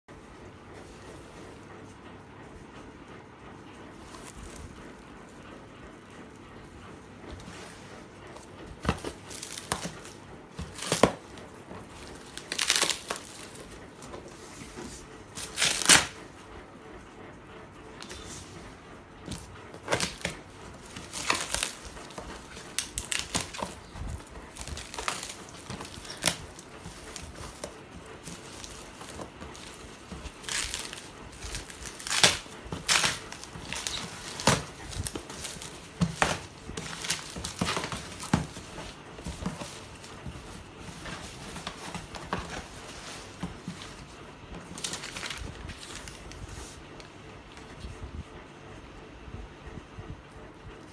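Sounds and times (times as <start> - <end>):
packaging tearing and crinkling: 8.8 - 14.0, 15.4 - 16.2, 19.3 - 46.3.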